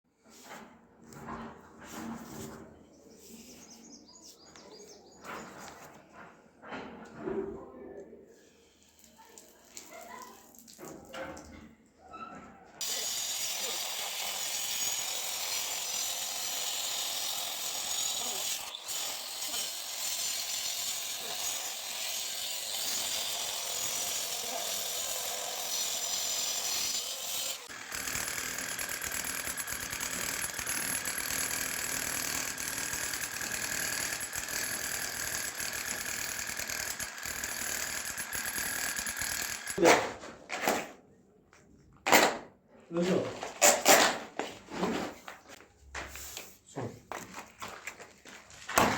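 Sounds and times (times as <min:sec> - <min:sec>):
angle grinder cutting into wall: 0:12.8 - 0:39.9.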